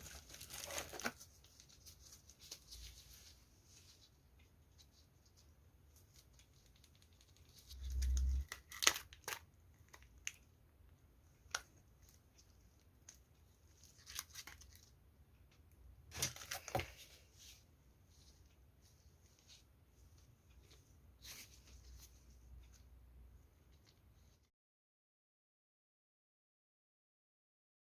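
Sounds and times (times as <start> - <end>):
packaging tearing and crinkling: 0.0 - 1.2, 7.8 - 10.4.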